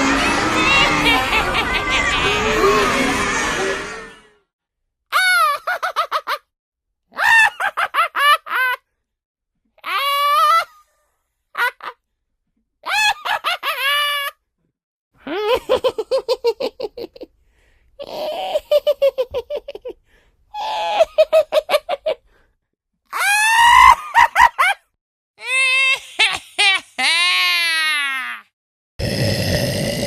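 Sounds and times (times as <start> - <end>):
high-pitched cackling laughter: 0.0 - 3.5, 5.1 - 6.4, 7.2 - 8.8, 11.6 - 12.0, 12.8 - 14.3, 15.2 - 17.2, 20.6 - 22.2, 23.2 - 24.8, 25.4 - 28.4.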